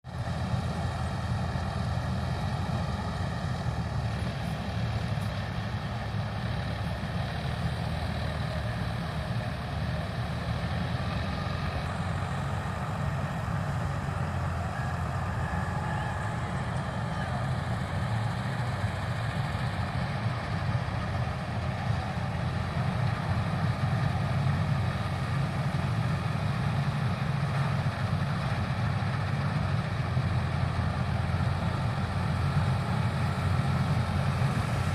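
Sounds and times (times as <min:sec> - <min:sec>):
harvester engine droning: 0:00.0 - 0:34.9.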